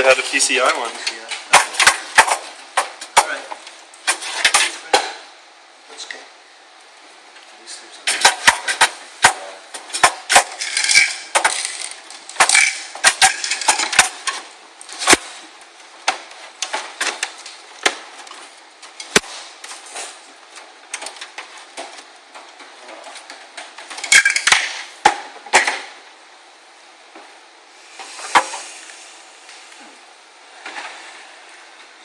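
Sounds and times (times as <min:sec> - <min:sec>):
computer parts clicking and clattering: 0:10.4 - 0:14.5.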